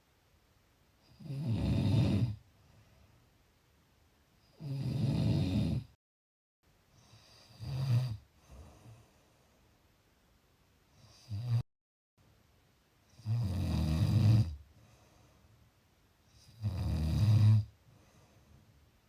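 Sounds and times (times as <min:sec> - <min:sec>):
person snoring: 0:01.1 - 0:02.4, 0:04.6 - 0:06.0, 0:13.2 - 0:14.6, 0:16.5 - 0:17.7.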